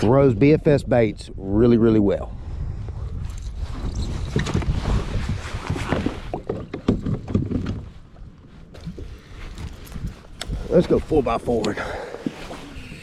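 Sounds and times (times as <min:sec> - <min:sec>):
wind rumbling on microphone: 0:00.0 - 0:13.0
paddle knocking on plastic hull: 0:06.3 - 0:08.0.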